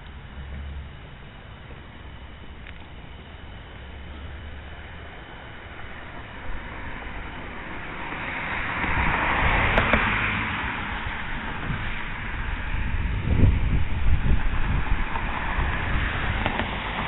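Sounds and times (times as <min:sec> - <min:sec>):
vehicle passing by: 0:04.0 - 0:17.0.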